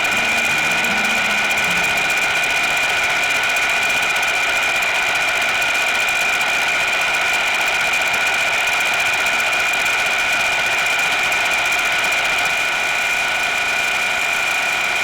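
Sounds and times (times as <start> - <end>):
lower machine tone: 0.0 - 3.9.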